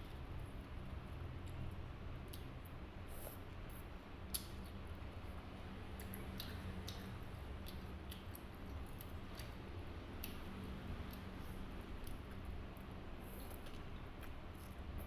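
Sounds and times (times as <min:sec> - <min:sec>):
person chewing: 0:06.0 - 0:09.6, 0:13.2 - 0:15.0.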